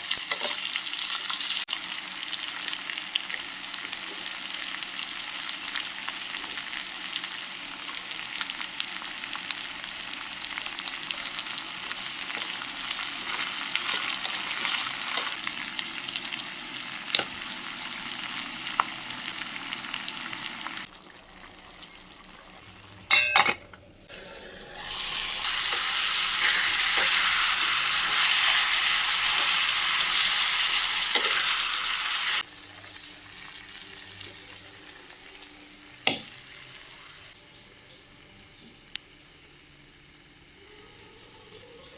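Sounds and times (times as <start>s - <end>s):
vegetables sizzling in oil: 0.0s - 23.0s, 24.1s - 40.8s.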